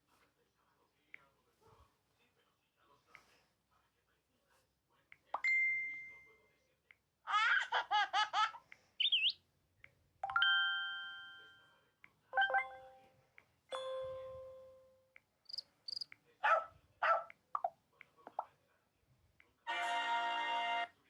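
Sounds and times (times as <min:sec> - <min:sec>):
ringing chimes: 0:10.3 - 0:11.7.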